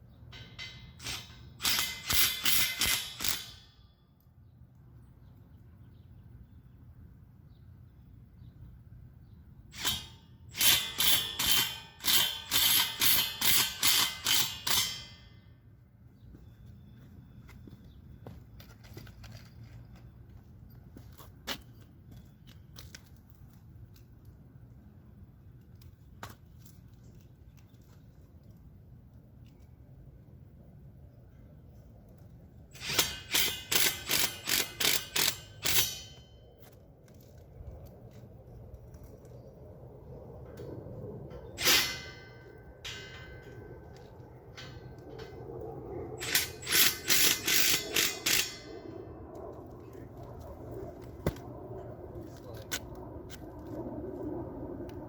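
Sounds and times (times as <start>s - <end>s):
socket ratchet clicking: 46.2s - 48.5s
power tool bursts: 46.2s - 48.6s.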